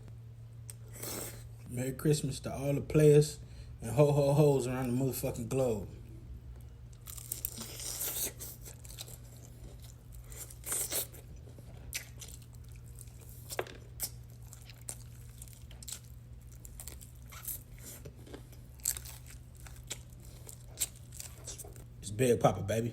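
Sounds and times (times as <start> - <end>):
steady low hum: 0.0 - 22.9
crunching fried chicken: 6.4 - 21.9.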